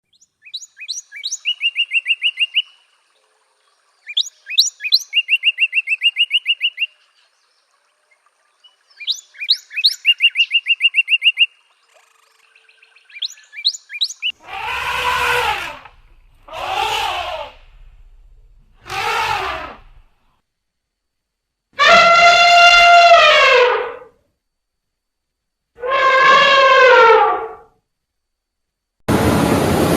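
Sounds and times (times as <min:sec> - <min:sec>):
songbird singing: 0:00.0 - 0:14.6
harsh animal calls: 0:14.3 - 0:20.1, 0:21.8 - 0:24.1, 0:25.8 - 0:27.7.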